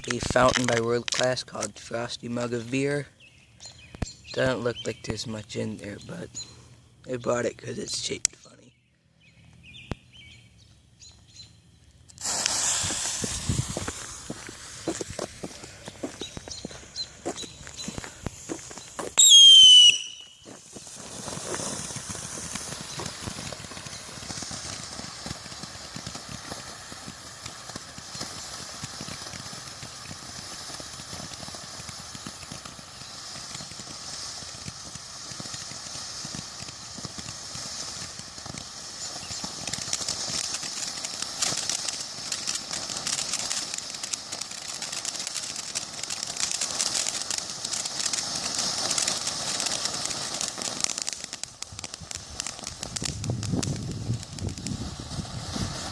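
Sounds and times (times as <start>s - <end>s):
firework sparks hissing and crackling: 0.0s - 8.6s, 9.5s - 55.9s
firework whistle: 12.1s - 55.9s.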